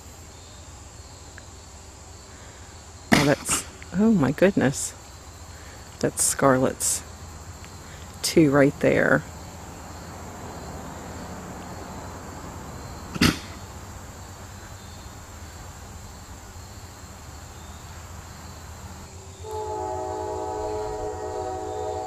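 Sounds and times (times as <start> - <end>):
outdoor background noise: 0.0 - 22.0
train horn chord: 19.4 - 22.0.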